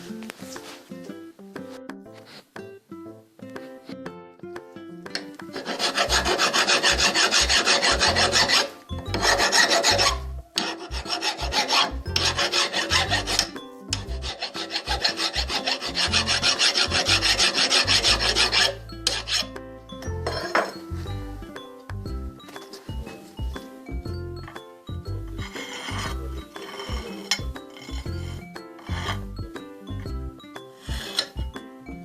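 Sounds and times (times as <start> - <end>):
hand file rasping on metal: 5.5 - 19.5, 25.4 - 29.3, 30.8 - 31.4.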